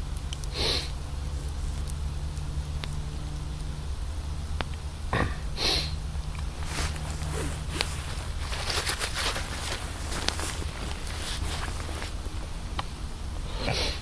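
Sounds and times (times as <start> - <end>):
campfire crackling: 0.0 - 14.0
short hissing rushes: 0.5 - 1.0, 5.5 - 6.0.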